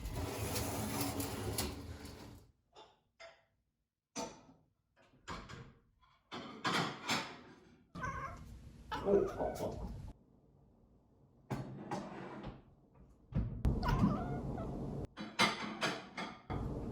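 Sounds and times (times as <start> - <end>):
dishes clattering: 6.3 - 7.6, 15.1 - 16.7.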